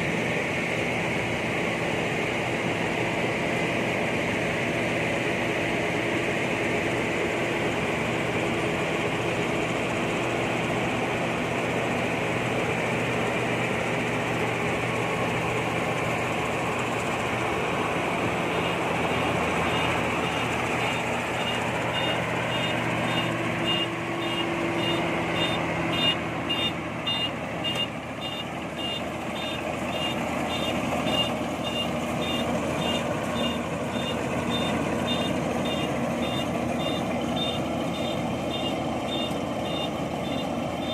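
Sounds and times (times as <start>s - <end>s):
diesel engine running: 0.0s - 40.9s
reversing alarm beeping: 18.4s - 40.9s.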